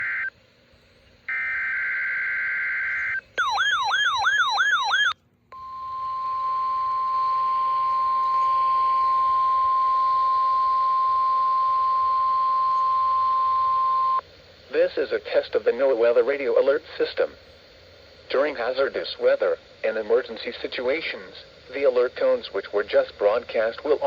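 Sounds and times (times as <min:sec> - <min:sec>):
steady warning alarm tone: 0:00.0 - 0:00.3, 0:01.3 - 0:14.2
warbling siren-like sweep: 0:03.4 - 0:05.2.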